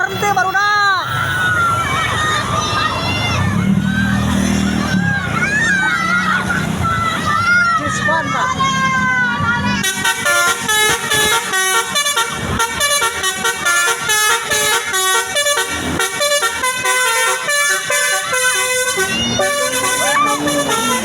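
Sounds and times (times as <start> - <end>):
musical bus air horn tune: 9.8 - 21.0.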